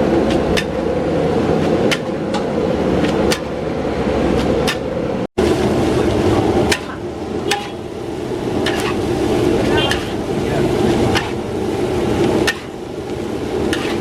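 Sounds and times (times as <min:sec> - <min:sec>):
stove rushing noise: 0:00.0 - 0:14.0
metal spatula striking a wok: 0:00.2 - 0:00.8, 0:06.7 - 0:07.9, 0:08.6 - 0:09.0, 0:12.4 - 0:12.8.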